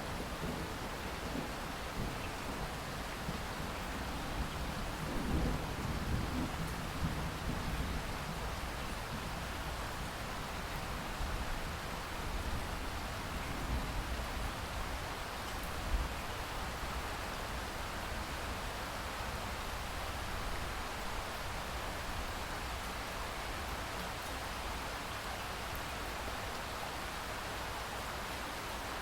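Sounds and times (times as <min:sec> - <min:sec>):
steady rain falling: 0:00.0 - 0:29.0.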